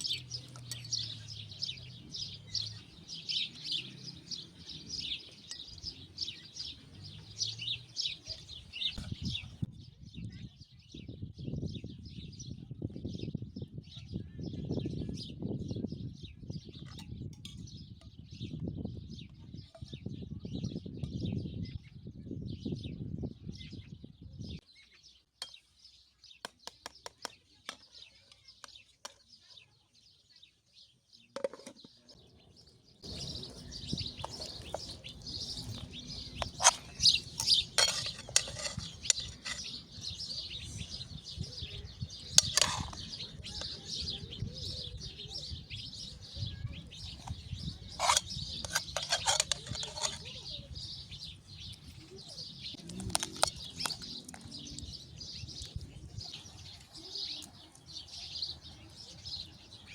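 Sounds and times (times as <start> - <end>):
birds chirping and twittering: 0.0 - 59.9
tableware clinking: 35.7 - 39.8, 42.4 - 43.1, 48.0 - 50.3.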